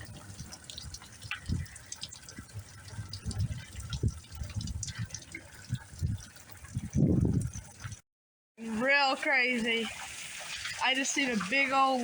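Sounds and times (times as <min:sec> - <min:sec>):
dull low thumps: 0:00.0 - 0:08.0
rain falling and dripping: 0:00.0 - 0:08.0, 0:08.6 - 0:12.0
sharp drip ticks: 0:00.0 - 0:08.0.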